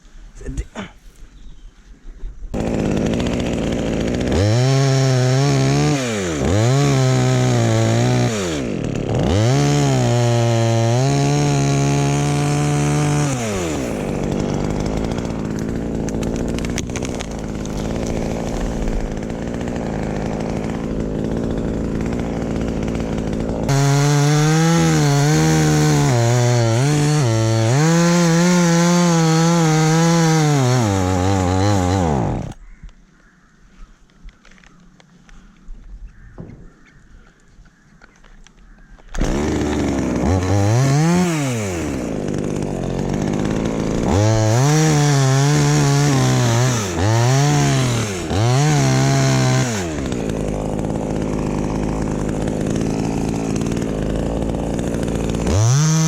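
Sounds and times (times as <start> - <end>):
chainsaw revving: 2.6 - 32.6, 39.1 - 56.0.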